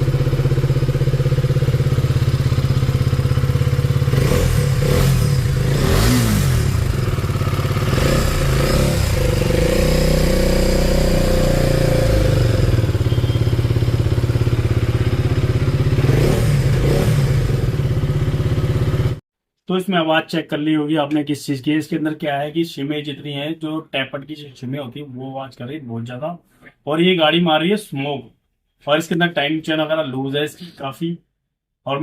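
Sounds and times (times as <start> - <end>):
motorcycle engine revving: 0.0 - 19.2.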